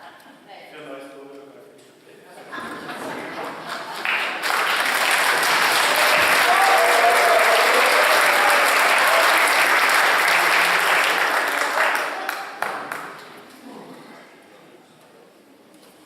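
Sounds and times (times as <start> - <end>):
audience applauding in a hall: 3.2 - 13.6.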